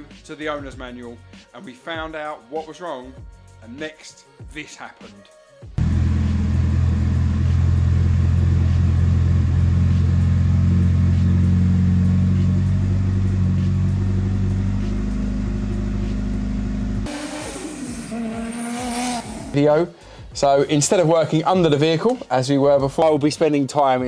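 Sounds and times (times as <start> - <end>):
car engine running: 5.8 - 19.6.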